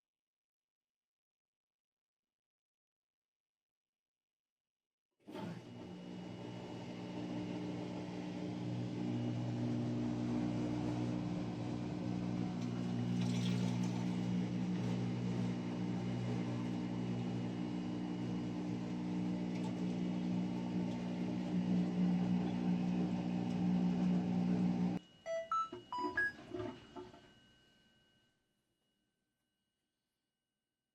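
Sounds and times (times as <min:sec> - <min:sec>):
washing machine humming: 0:05.3 - 0:27.4.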